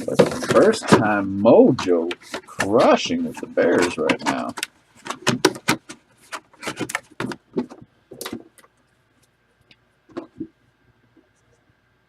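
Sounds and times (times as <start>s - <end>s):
objects clicking and knocking: 0.0s - 8.7s.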